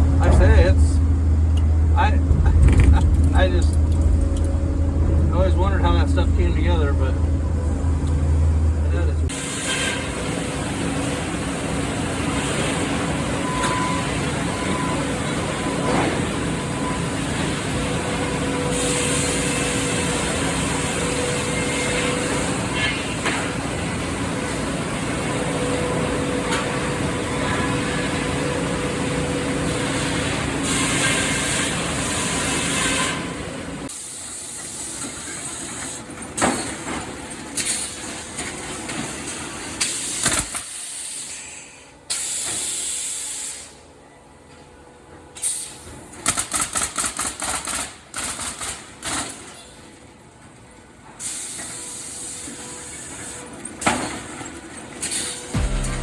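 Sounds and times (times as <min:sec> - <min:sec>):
motor hum: 0:00.0 - 0:09.2, 0:55.6 - 0:56.0
repeated clattering bursts: 0:02.2 - 0:05.3.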